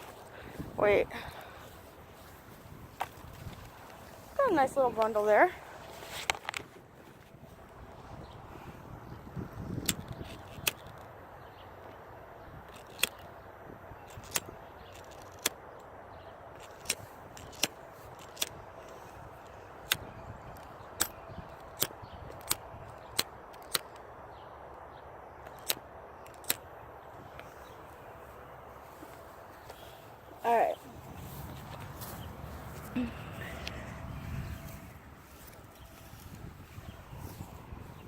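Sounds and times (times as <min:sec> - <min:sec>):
outdoor background hiss: 0:00.0 - 0:09.8, 0:10.4 - 0:38.0.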